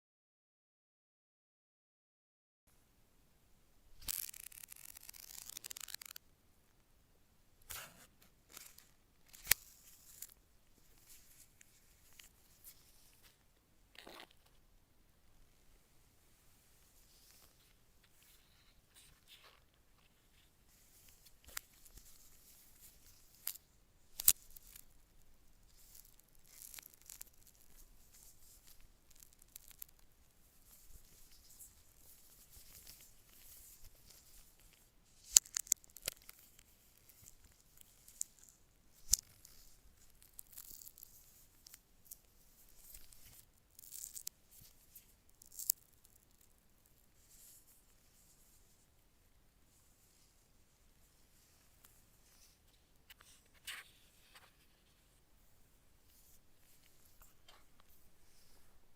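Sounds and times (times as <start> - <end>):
packaging rustling and tearing: 4.0 - 6.2, 25.7 - 30.0.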